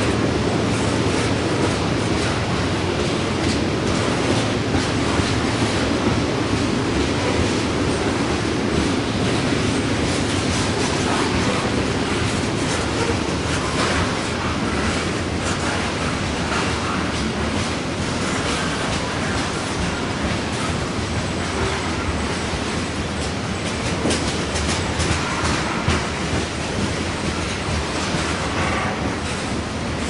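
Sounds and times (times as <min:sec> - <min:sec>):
freight train rail rumble: 0:00.0 - 0:30.0.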